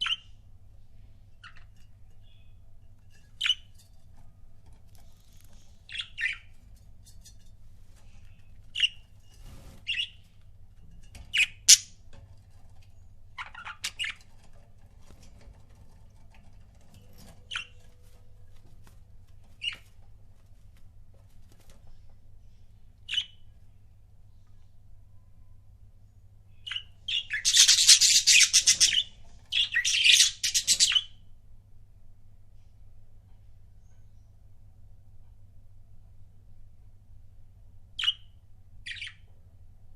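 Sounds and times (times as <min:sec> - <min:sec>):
budgerigars chirping and squawking: 0:00.0 - 0:00.4, 0:05.6 - 0:06.5, 0:11.3 - 0:11.9, 0:13.4 - 0:14.3, 0:26.6 - 0:31.2.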